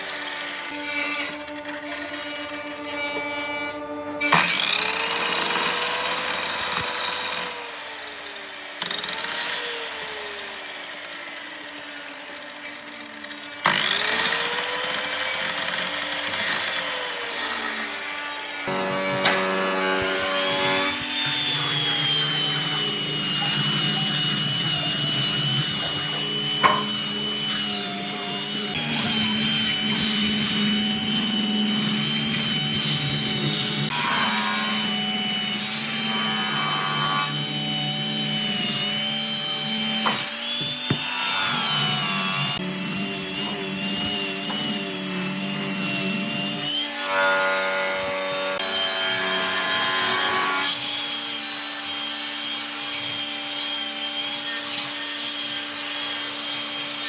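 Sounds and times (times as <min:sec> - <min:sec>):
power tool motor whine: 0:00.0 - 0:47.0
abrasive rubbing of wood cut: 0:13.7 - 0:48.6.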